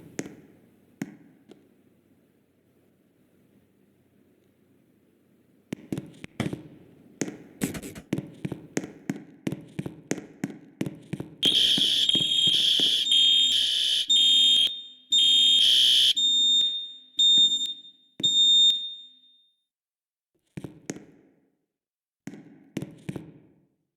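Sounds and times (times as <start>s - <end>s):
fire alarm tone: 11.4s - 19.6s.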